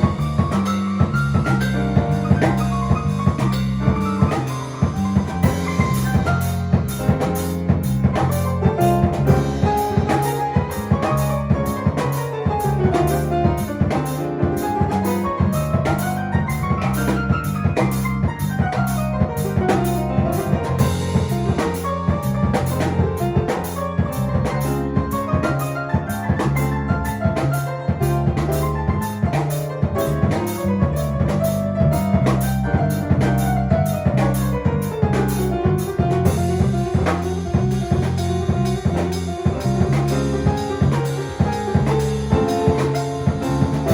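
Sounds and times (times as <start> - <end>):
repeating bass line: 0.0 - 14.0, 30.0 - 43.9
drum kit groove: 0.0 - 43.9.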